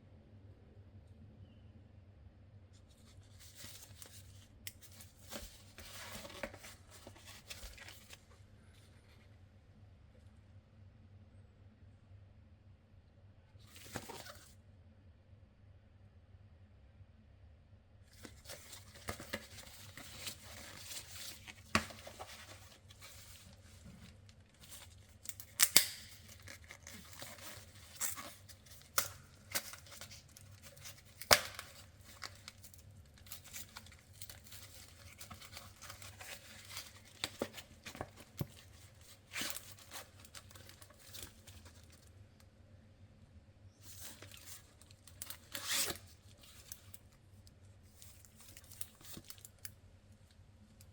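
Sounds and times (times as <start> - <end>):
wrapper being torn and crinkled: 18.2 - 42.1, 43.8 - 47.1, 48.0 - 49.7.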